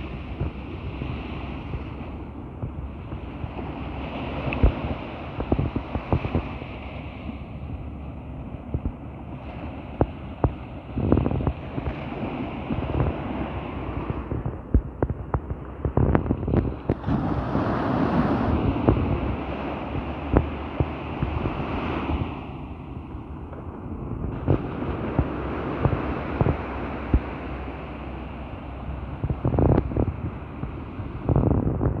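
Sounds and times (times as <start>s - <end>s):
sea waves breaking on beach: 0.0s - 32.0s
wind buffeting microphone: 0.0s - 32.0s.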